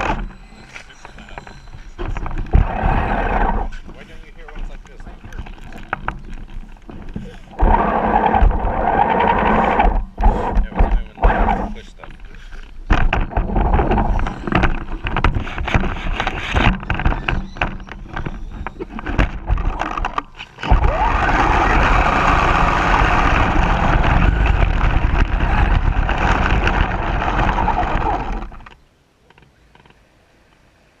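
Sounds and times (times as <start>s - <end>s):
wind rushing on microphone: 20.6s - 28.8s.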